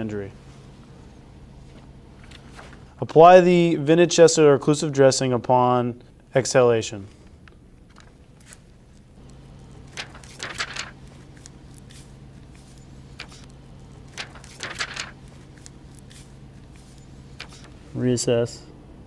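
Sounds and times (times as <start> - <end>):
low steady hum: 0.0 - 19.0
plastic rustling and crinkling: 9.9 - 17.8.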